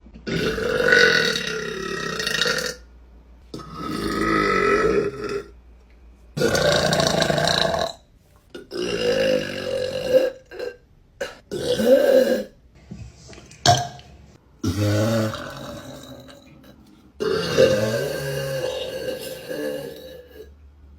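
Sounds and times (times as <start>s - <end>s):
woman belching loudly: 0.2s - 2.8s, 3.6s - 5.5s, 6.4s - 8.0s, 14.6s - 20.5s.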